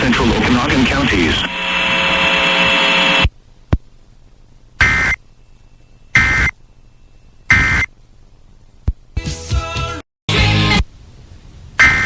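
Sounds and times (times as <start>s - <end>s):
digital data tone bursts: 4.8s - 7.9s, 11.8s - 12.0s.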